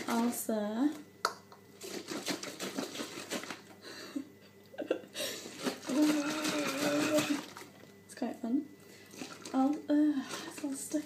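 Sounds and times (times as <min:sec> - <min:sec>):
plastic bottle shaken: 0:01.8 - 0:03.7, 0:05.4 - 0:07.7, 0:09.1 - 0:11.0.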